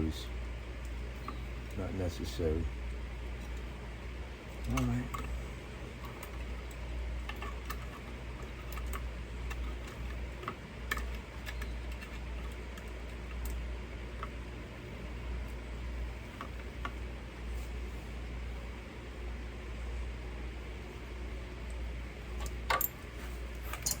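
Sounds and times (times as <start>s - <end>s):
steady low hum: 0.0s - 24.0s
small metal hardware clicking: 6.0s - 13.6s, 22.4s - 23.0s, 23.6s - 24.0s.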